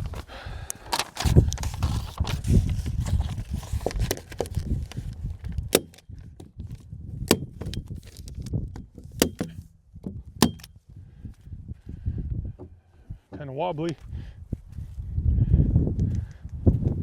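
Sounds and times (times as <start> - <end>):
wind buffeting microphone: 0.0 - 17.0
sharp clicks or knocks: 5.6 - 6.5, 7.3 - 10.7.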